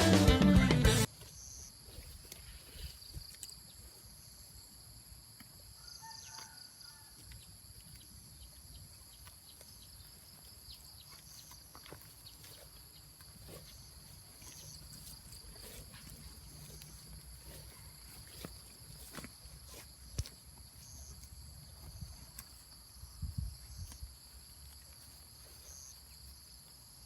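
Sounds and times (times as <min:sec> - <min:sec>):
cattle cropping grass: 0:00.0 - 0:04.2, 0:05.3 - 0:27.0
insects whining: 0:09.9 - 0:27.0
low rumble of wind: 0:23.0 - 0:24.2.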